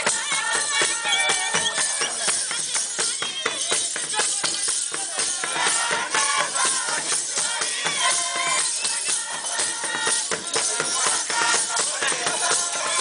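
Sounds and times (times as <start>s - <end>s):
drums beaten in fast rhythm: 0.0s - 13.0s
voices singing: 0.0s - 13.0s.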